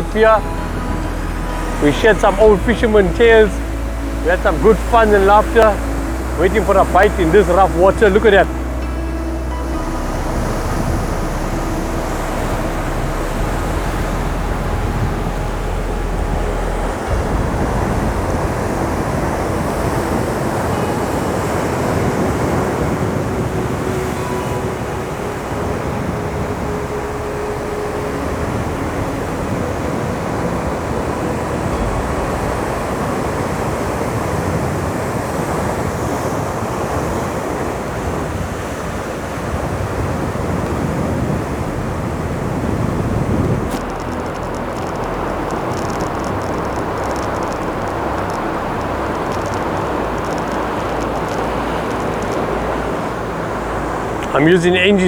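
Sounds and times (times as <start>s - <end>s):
heavy surf breaking: 0.0s - 55.0s
wind buffeting microphone: 0.0s - 55.0s.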